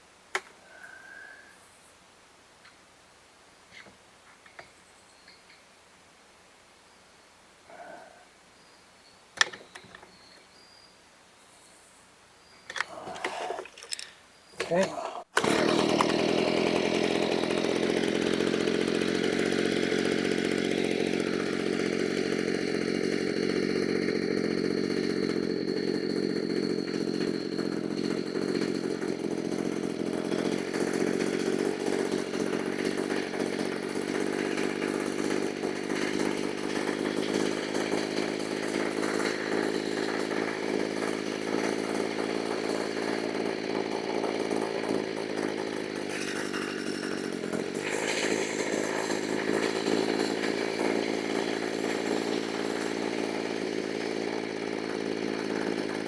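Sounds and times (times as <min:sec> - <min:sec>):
leaf blower engine running: 0:00.7 - 0:01.4, 0:12.8 - 0:56.0.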